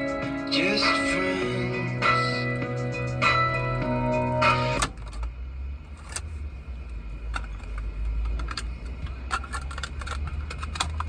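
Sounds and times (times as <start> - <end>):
cassette music: 0.0 - 5.0
small clicks and rattles: 7.3 - 11.0.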